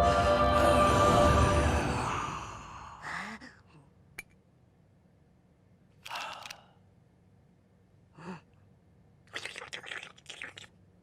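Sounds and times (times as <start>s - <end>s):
background music: 0.0s - 2.7s
breathy sigh: 6.0s - 6.8s.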